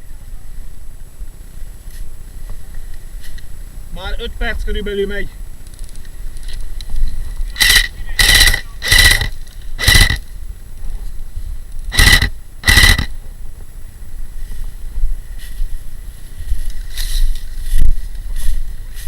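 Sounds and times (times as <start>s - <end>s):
gearbox rattling and motor whine: 4.0s - 10.4s, 11.7s - 13.3s
airsoft gun rapid-fire bursts: 7.6s - 10.2s, 11.9s - 13.1s.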